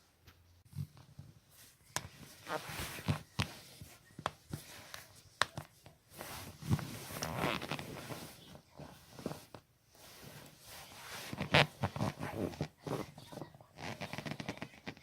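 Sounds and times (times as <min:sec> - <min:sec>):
rustling of movement: 0:00.0 - 0:15.0.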